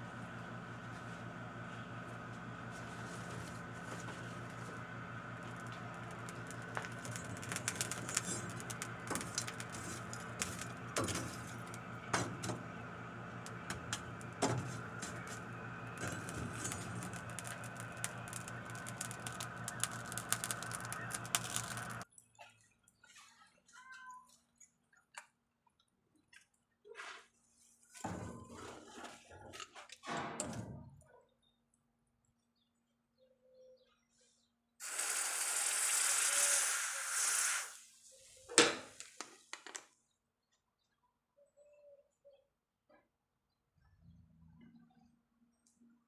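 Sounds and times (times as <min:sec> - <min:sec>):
power tool motor running: 0:03.4 - 0:22.0
metal clicks and scrapes: 0:05.5 - 0:12.6, 0:13.4 - 0:22.0.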